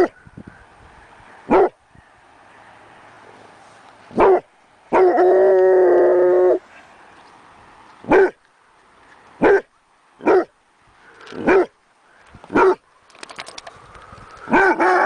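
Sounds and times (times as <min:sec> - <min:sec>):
dog barking: 0:01.5 - 0:01.8, 0:04.2 - 0:05.2, 0:08.1 - 0:08.4, 0:09.4 - 0:10.5, 0:11.4 - 0:11.7, 0:12.5 - 0:12.8, 0:14.5 - 0:15.0.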